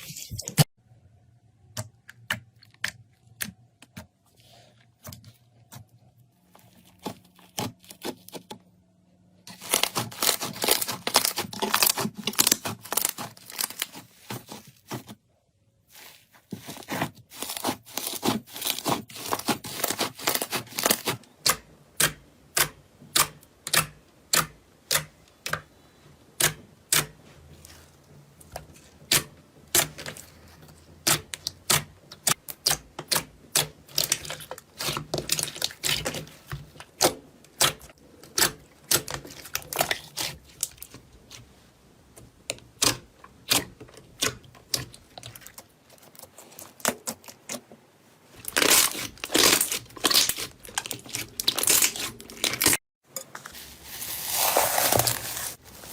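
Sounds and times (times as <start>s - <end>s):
slime popping and crackling: 9.5s - 14.6s, 48.5s - 52.8s.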